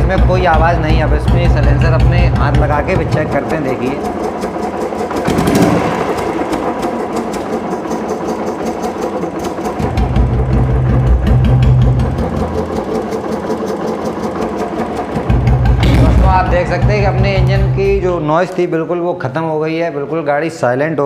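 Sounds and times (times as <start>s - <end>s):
motorcycle engine idling: 0.0s - 18.6s.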